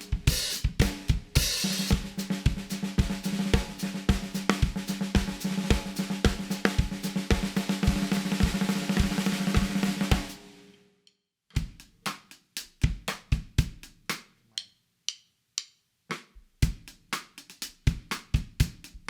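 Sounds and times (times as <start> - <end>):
snare drum hits: 3.0 - 10.5.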